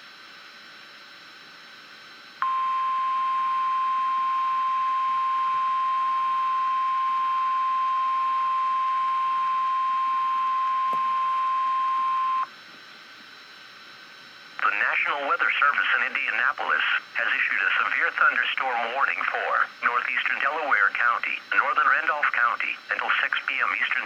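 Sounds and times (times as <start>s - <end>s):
high alarm beep: 2.4s - 12.5s
radio hiss: 8.1s - 24.0s.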